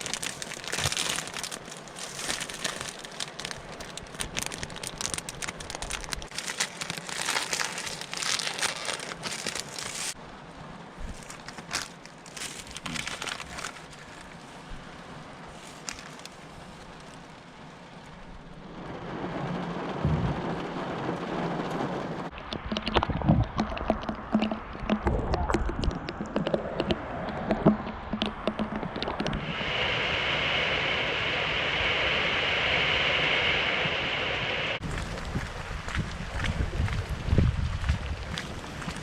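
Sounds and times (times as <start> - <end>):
raindrops tapping microphone: 0.0 - 29.6
rain and wind rushing: 0.0 - 39.0
steady rushing hiss: 27.6 - 34.9.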